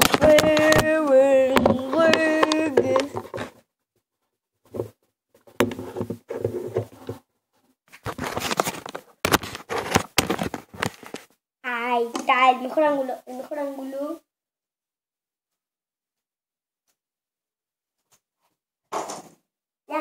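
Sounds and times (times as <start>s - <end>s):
camera handling bumps and rustling: 0.0s - 3.6s, 7.9s - 11.3s.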